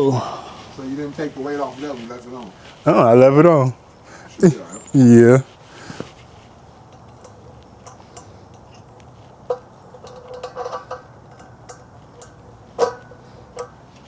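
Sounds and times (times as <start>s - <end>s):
metallic clicks and clanks: 6.9s - 13.8s
rattling clinks: 6.9s - 13.9s.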